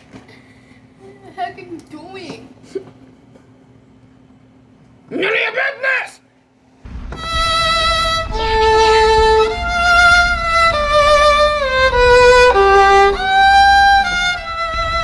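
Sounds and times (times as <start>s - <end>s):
solo violin slow melody: 8.3s - 15.0s.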